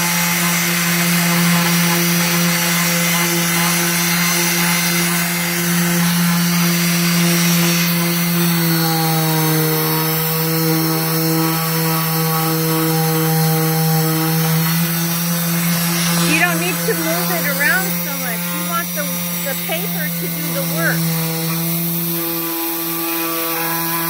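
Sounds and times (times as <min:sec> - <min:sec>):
orbital sander on wood: 0:00.0 - 0:24.0.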